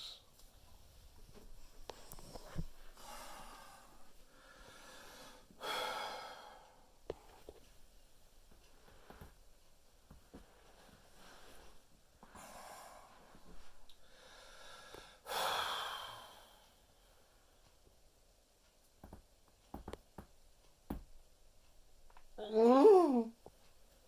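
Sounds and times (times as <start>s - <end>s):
heavy breathing: 2.0s - 6.9s.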